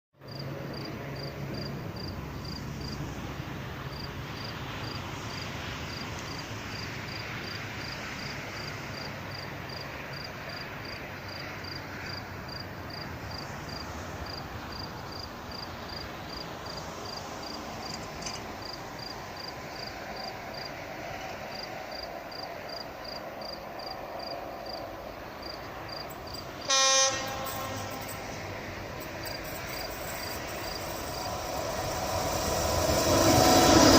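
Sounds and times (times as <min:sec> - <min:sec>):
freight train rumbling: 0:00.4 - 0:33.9
train horn blast: 0:26.6 - 0:28.6.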